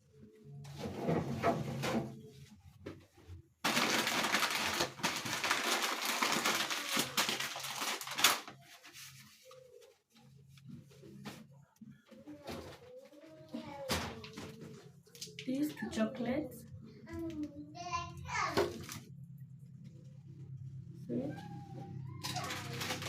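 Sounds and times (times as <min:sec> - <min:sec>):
plastic bags rustling and crinkling: 0:03.6 - 0:11.5, 0:21.2 - 0:23.0.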